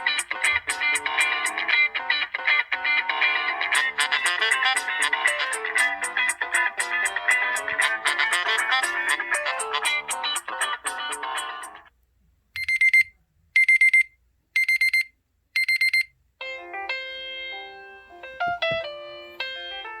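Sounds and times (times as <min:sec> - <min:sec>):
piano-like melody: 0:00.0 - 0:11.9, 0:16.4 - 0:20.0.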